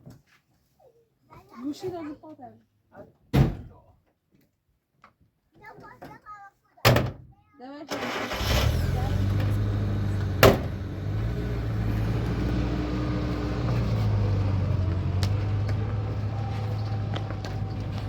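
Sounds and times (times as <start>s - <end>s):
engine humming: 8.0s - 18.0s.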